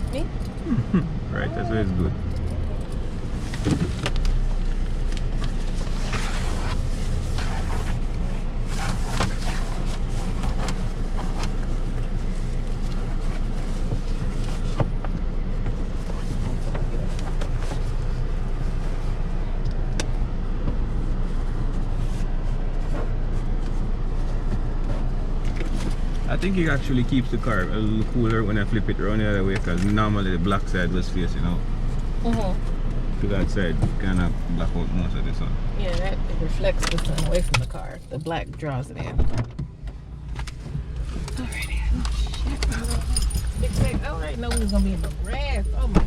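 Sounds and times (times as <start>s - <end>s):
car engine idling: 0.0s - 46.0s
rustling and handling noise: 2.8s - 19.2s.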